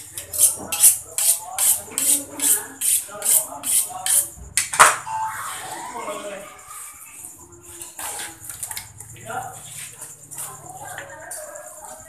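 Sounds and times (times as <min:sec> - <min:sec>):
knife blade scraping strokes: 0:00.2 - 0:04.3.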